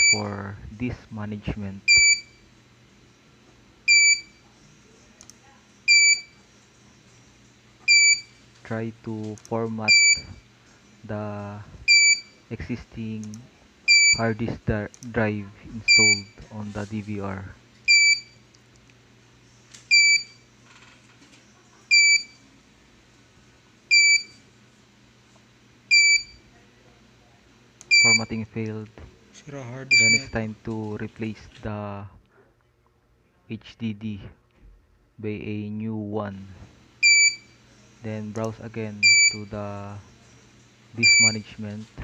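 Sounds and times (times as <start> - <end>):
high-pitched beeping alarm: 0.0 - 0.3, 1.9 - 2.4, 3.9 - 4.4, 5.9 - 6.4, 7.9 - 8.4, 9.9 - 10.4, 11.9 - 12.4, 13.9 - 14.4, 15.9 - 16.4, 17.9 - 18.4, 19.9 - 20.4, 21.9 - 22.4, 23.9 - 24.4, 25.9 - 26.4, 27.9 - 28.4, 29.9 - 30.4, 37.0 - 37.6, 39.0 - 39.6, 41.0 - 41.5.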